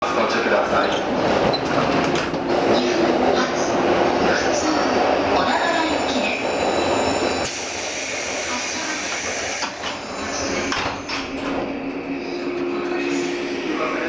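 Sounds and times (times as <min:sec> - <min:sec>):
voices in background: 0:00.0 - 0:07.0, 0:08.0 - 0:11.1.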